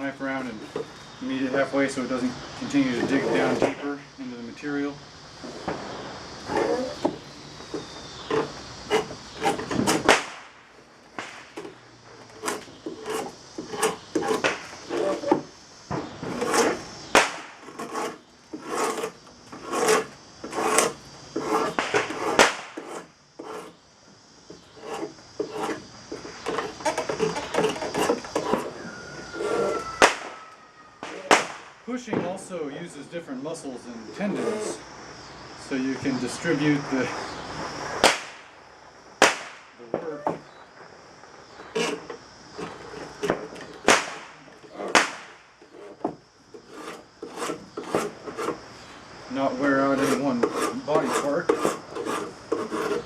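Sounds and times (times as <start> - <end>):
draw knife scraping wood: 6.5 - 10.1, 11.6 - 15.5, 16.3 - 16.8, 17.6 - 23.8, 24.5 - 29.9, 34.3 - 34.8, 41.7 - 43.8, 45.6 - 48.6, 49.8 - 53.0.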